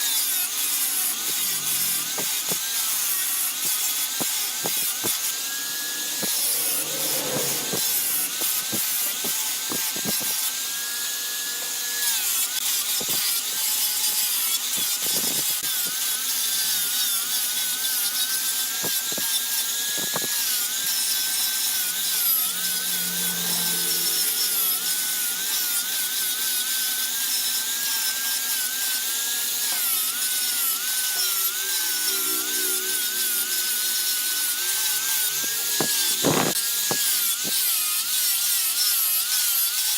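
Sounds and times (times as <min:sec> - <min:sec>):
lathe tool scraping wood: 0:00.0 - 0:39.9
motor whine: 0:01.1 - 0:02.9, 0:03.5 - 0:10.3, 0:19.1 - 0:27.1, 0:29.4 - 0:37.0.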